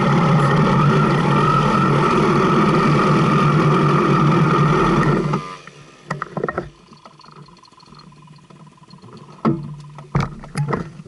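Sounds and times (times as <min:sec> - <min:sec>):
motorcycle engine running: 0:00.0 - 0:11.0
sharp knocks and clicks: 0:06.1 - 0:11.0.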